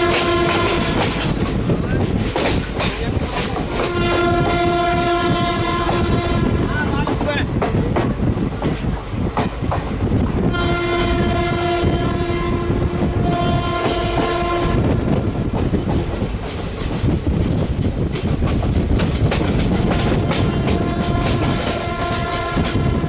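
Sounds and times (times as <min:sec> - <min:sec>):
locomotive horn blasts: 0:00.0 - 0:01.2, 0:03.7 - 0:06.7, 0:10.4 - 0:15.2, 0:20.2 - 0:23.0
train rumble and wheel clatter: 0:00.0 - 0:23.0.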